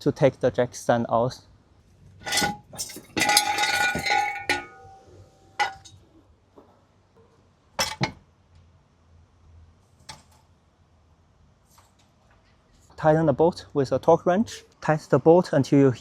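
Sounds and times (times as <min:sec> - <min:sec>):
steel tools clanking: 0:02.2 - 0:06.0.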